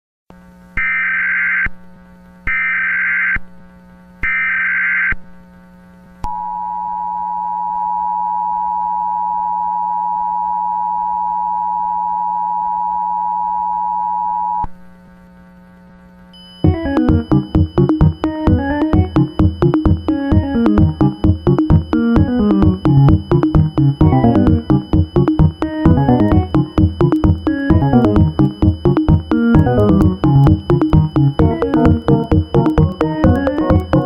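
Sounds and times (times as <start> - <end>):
two-tone alert signal: 16.4 - 34.0
music: 16.6 - 34.0
screeching data bursts: 16.6 - 34.0.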